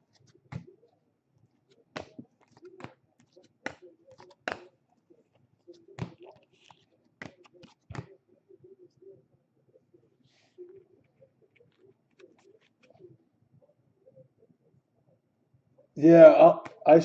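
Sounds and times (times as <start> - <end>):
trading cards snapping: 1.9 - 4.7, 6.0 - 8.1.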